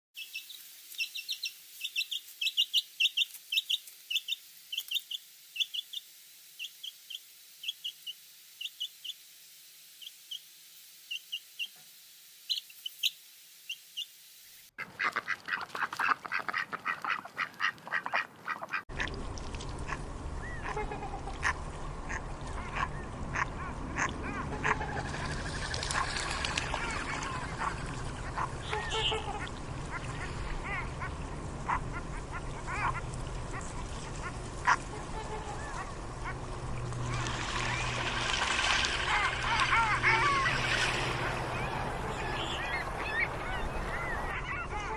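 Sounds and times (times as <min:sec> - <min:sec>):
farm bird calls: 0:19.8 - 0:44.9.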